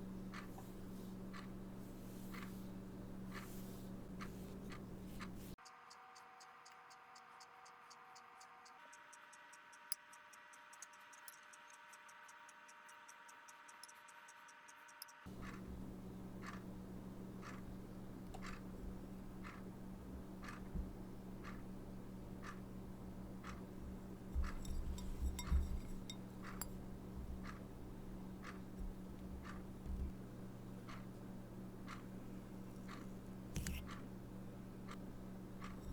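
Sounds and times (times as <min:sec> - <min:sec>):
low steady hum: 0:00.0 - 0:05.6, 0:15.3 - 0:35.9
regular ticking: 0:00.0 - 0:35.9.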